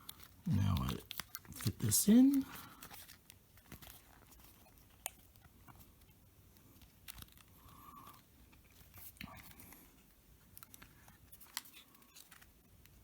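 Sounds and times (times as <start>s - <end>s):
faint clicks of laptop parts: 2.8s - 13.0s.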